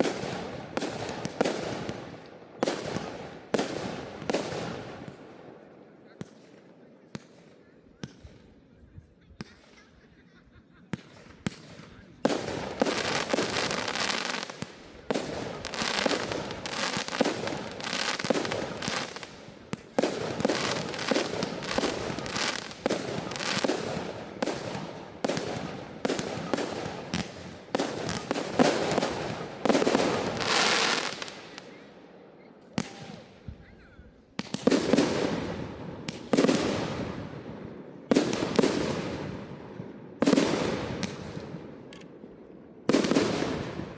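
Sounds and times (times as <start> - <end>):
fireworks bursts and crackling: 0.0 - 5.3, 10.8 - 31.9, 32.7 - 33.6, 34.3 - 42.2, 42.8 - 43.9
sharp firework cracks: 11.0 - 31.8, 40.2 - 42.1, 42.9 - 43.8.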